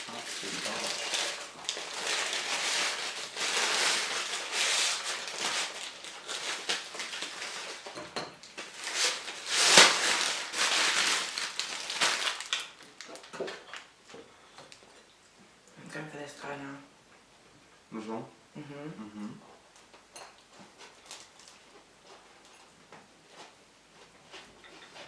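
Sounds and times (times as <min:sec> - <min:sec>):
bread crust crackling and crunching: 0:00.0 - 0:13.9.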